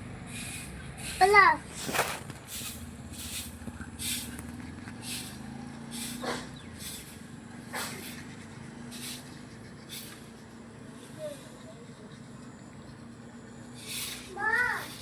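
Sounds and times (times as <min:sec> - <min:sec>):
engine humming: 0:00.0 - 0:15.0
short hisses: 0:00.3 - 0:04.4, 0:05.0 - 0:08.3, 0:08.9 - 0:10.3, 0:13.8 - 0:15.0.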